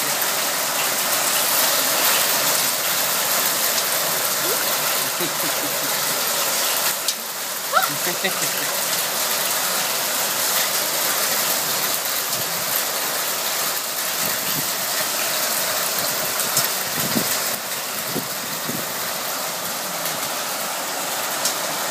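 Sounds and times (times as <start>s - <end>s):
hail and rain pelting down: 0.0s - 21.9s.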